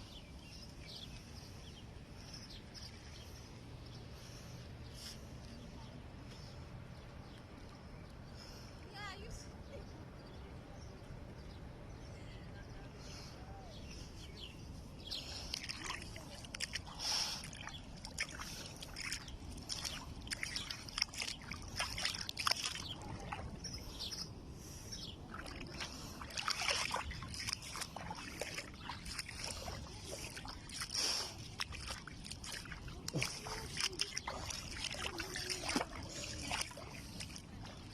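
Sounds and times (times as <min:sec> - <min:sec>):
small waves sloshing at shore: 0:13.8 - 0:37.9.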